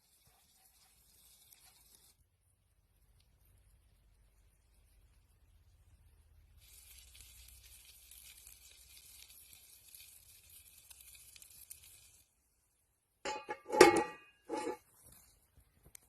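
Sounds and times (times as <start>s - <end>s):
faint steady hiss: 0.0s - 16.0s
cookware clinking: 13.3s - 14.8s.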